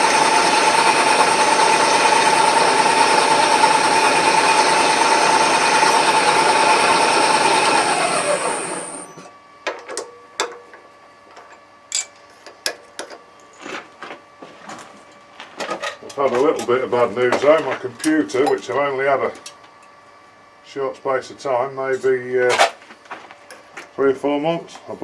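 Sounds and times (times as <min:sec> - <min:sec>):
machine spinning down: 0:00.0 - 0:09.3
milling machine running: 0:00.0 - 0:09.3.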